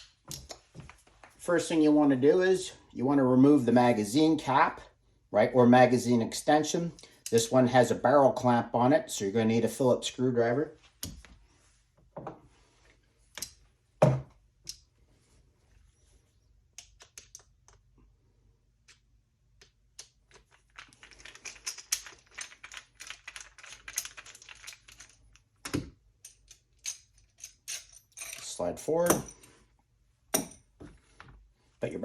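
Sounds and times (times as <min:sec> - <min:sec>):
screwdriver and metal parts clicking: 0:16.7 - 0:17.8, 0:18.8 - 0:29.6.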